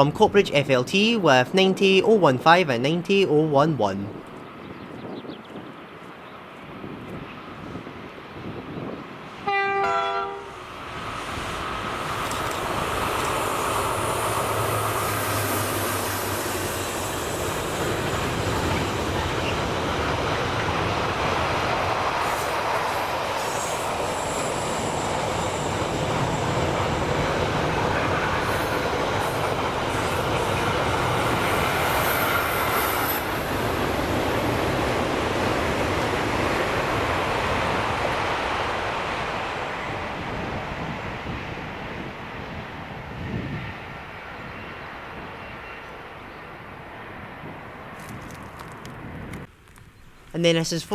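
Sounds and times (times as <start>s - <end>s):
train horn blast: 9.4s - 10.6s.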